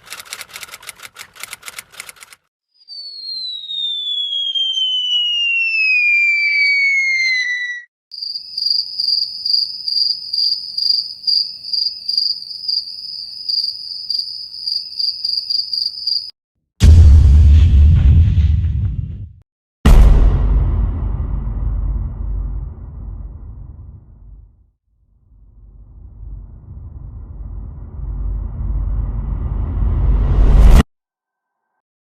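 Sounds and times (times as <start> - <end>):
high whistle sliding down: 2.8 - 7.9
crickets chirping: 8.1 - 16.3.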